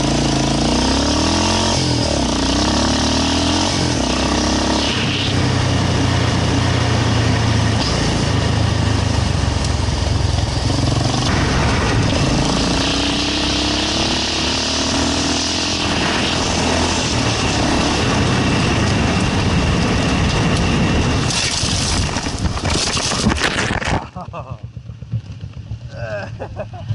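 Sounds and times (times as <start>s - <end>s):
motorcycle engine revving: 0.0s - 26.9s
steady rushing noise: 3.8s - 24.0s.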